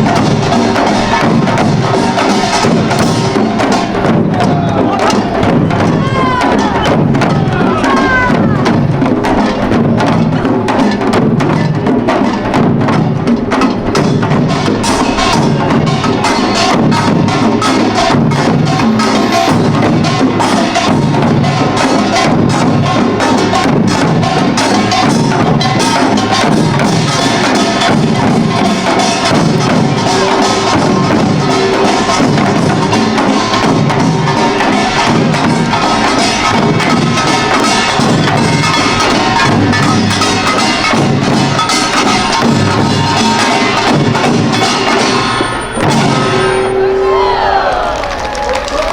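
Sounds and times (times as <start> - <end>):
drums in fast rhythm: 0.0 - 47.2
small gongs: 14.9 - 47.7.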